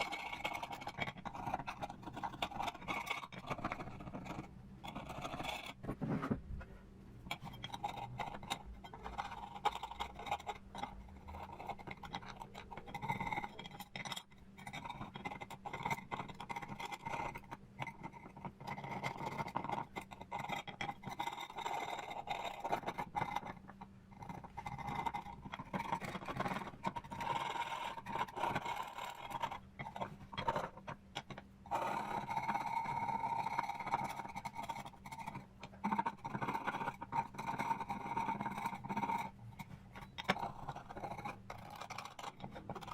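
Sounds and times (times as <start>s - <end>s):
scraping on metal plate: 0.0s - 6.8s
faint steady hum: 0.0s - 42.9s.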